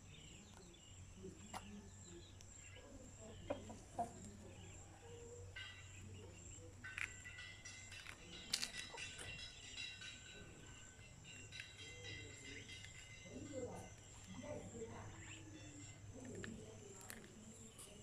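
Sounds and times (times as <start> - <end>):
chickens clucking: 0.0 - 18.0
steady high tones: 5.5 - 16.7.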